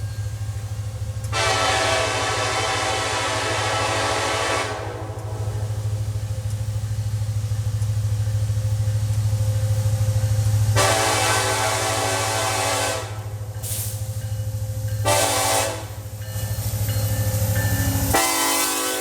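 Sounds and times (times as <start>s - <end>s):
locomotive horn chord: 1.2s - 6.1s, 10.7s - 13.5s, 15.0s - 16.1s, 18.1s - 19.0s.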